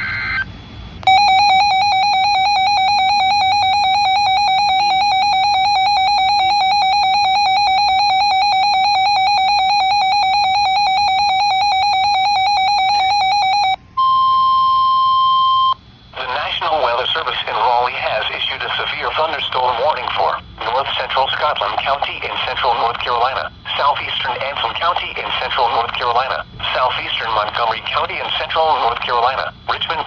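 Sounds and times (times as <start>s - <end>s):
warning alarm tone: 1.0s - 15.8s
shrill fluttering electronic alarm: 1.0s - 17.2s.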